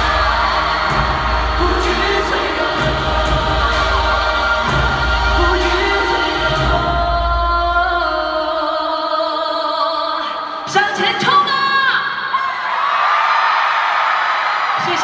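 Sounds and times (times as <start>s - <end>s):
low bass: 0.0s - 8.0s
live pop band: 0.0s - 9.5s
choir-like vocals holding notes: 0.0s - 10.7s.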